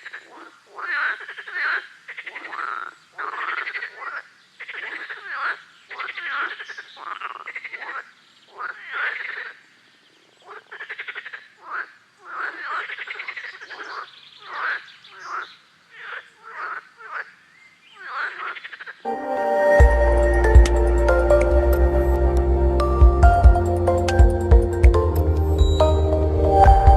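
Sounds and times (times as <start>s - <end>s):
frogs croaking: 0.0s - 19.1s
music: 19.1s - 26.9s.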